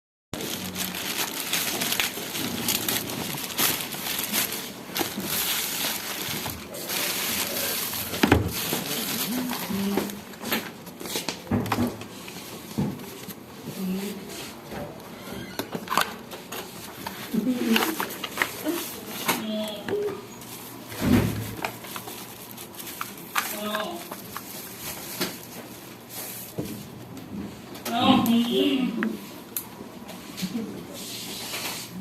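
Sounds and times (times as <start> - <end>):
packaging crinkling: 0.4 - 11.5, 15.5 - 19.4, 20.4 - 26.6.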